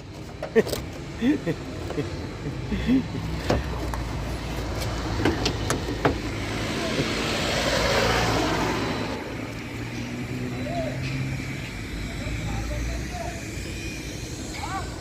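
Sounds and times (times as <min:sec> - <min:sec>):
motor vehicle passing by: 0:03.2 - 0:13.3.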